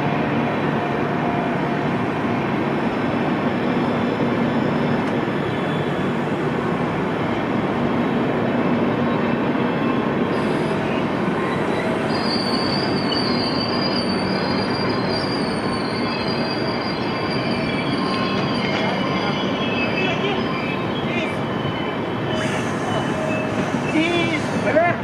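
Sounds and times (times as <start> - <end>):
train rolling on track: 0.0 - 25.0
high wheel squeal: 3.7 - 7.3, 9.8 - 24.8.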